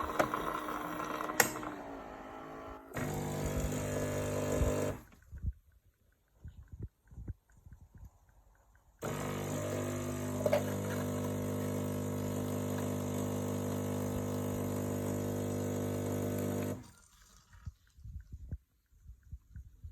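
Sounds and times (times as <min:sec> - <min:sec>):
coffee machine buzzing hum: 0:00.0 - 0:05.1, 0:09.0 - 0:16.9.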